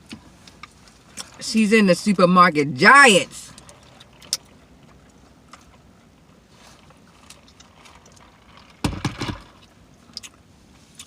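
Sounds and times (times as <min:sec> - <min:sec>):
faint handling and clicking: 0:03.5 - 0:08.8.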